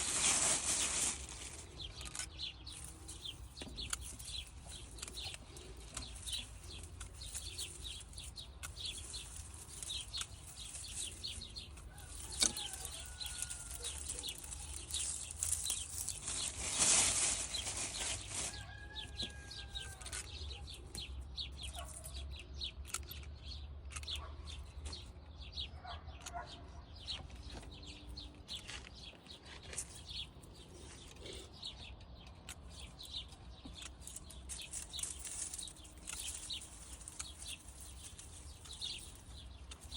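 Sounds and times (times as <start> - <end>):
foliage rustling and snapping: 0.0 - 21.1, 33.7 - 39.9.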